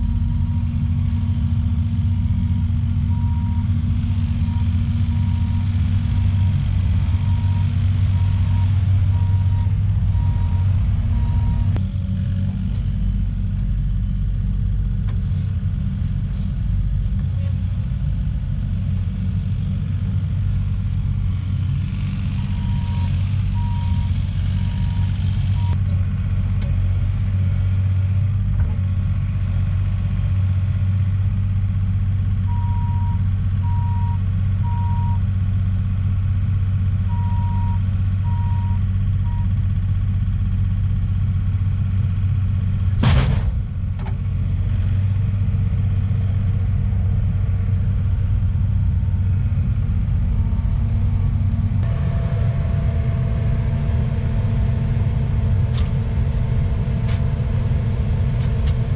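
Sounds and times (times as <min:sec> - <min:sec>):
diesel engine running: 0:00.0 - 0:58.9
backup alarm beeping: 0:03.1 - 0:11.7, 0:22.5 - 0:25.8, 0:37.1 - 0:39.5, 0:51.8 - 0:58.9
sharp bang: 0:43.0 - 0:43.7.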